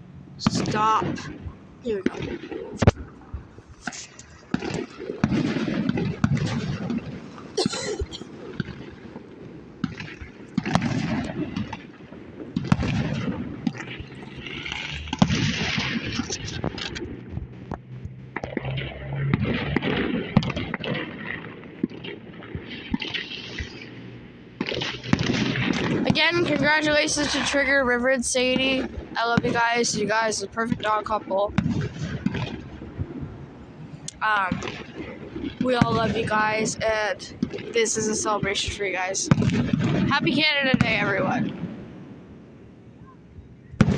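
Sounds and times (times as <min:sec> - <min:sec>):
fireworks bursting: 0:00.4 - 0:43.9
voices murmuring: 0:07.6 - 0:08.3, 0:26.0 - 0:31.6, 0:34.0 - 0:39.4.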